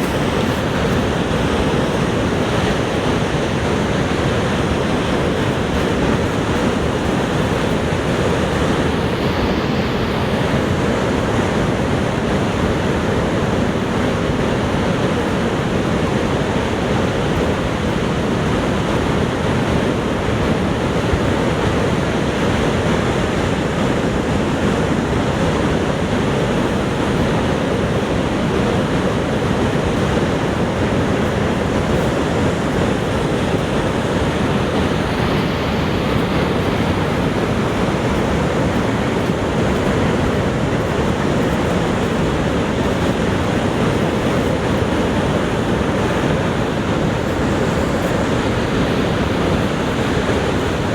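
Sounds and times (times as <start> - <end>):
waterfall roaring: 0.0 - 50.9.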